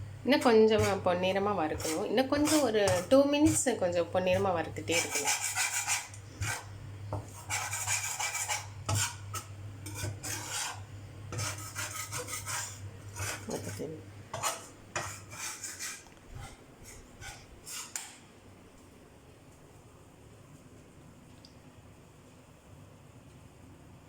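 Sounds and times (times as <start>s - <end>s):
low steady hum: 0.0s - 24.0s
ladle scraping and stirring in a pan: 0.3s - 18.1s.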